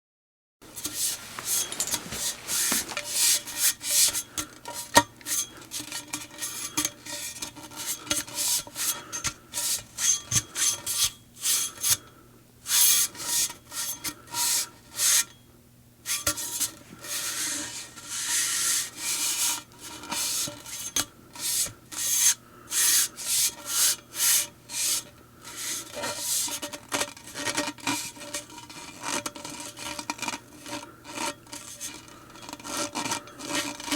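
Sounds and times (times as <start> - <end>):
metal rubbing and scraping: 0.7 - 11.0.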